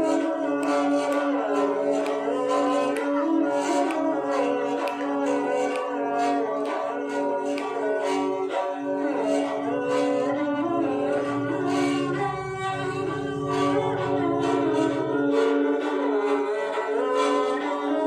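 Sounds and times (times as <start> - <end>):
held drone tones: 6.6 - 18.0
bowed string lute melody: 6.7 - 18.0.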